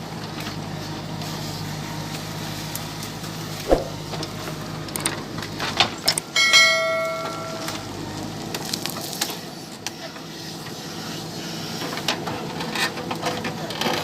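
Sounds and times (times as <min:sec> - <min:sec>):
loud ringing metallic clang: 0:06.4 - 0:08.0.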